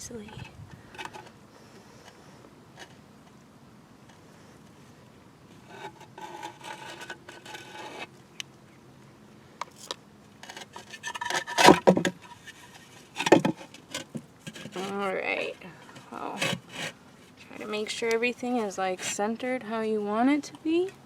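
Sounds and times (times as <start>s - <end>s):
clay pot scraping on saucer: 5.6s - 8.1s, 10.4s - 15.1s, 15.8s - 17.0s.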